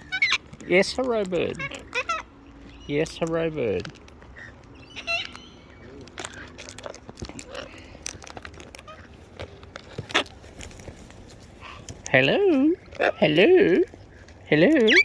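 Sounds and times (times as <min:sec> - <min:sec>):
parrot call: 0:00.0 - 0:00.8, 0:01.5 - 0:02.9, 0:04.4 - 0:05.9, 0:14.8 - 0:15.0
parrot beaks and claws clicking: 0:00.0 - 0:15.0.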